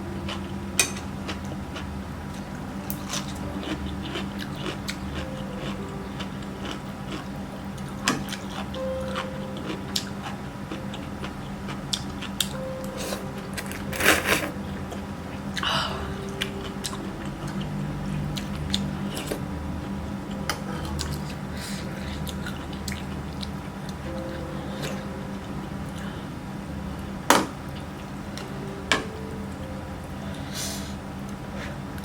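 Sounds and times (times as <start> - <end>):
soft background music: 0.0 - 32.0
chewing and crunching: 0.2 - 12.7.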